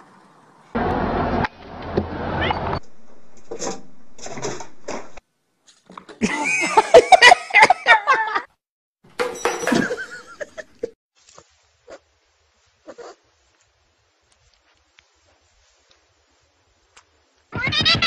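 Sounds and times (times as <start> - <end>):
cat yowling: 2.4 - 2.7
knocks and clatter: 2.8 - 5.2, 9.1 - 10.2.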